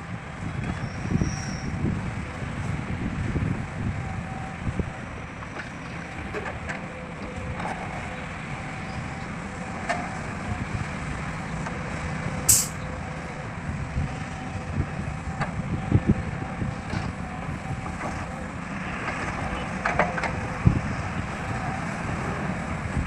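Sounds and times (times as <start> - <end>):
short sharp hiss: 12.5 - 12.8.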